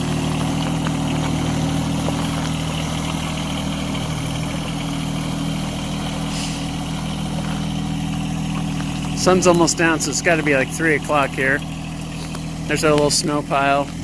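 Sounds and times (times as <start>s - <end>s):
tractor diesel engine running: 0.0s - 14.0s.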